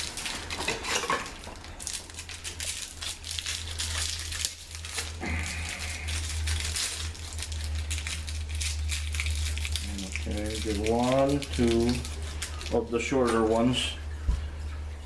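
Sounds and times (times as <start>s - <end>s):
packaging crinkling and rustling: 0.0s - 14.0s
steady low hum: 0.0s - 15.0s.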